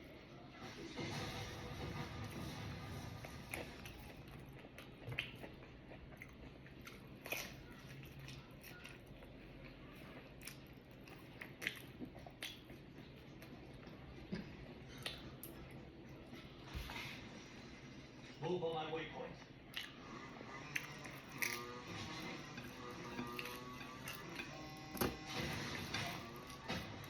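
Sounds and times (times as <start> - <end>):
person chewing wetly: 3.2 - 16.5, 19.6 - 27.0.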